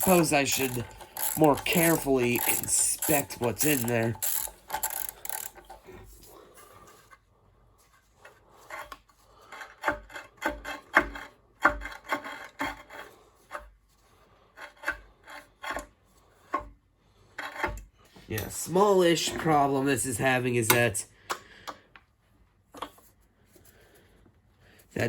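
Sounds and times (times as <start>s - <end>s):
engine scraping and clicking: 0.0s - 5.8s.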